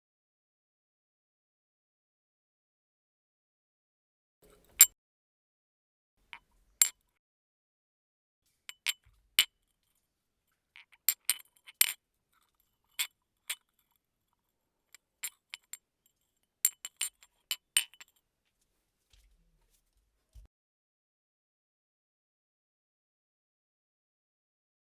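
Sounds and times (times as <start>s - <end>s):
tea glass clinking: 8.7s - 9.1s.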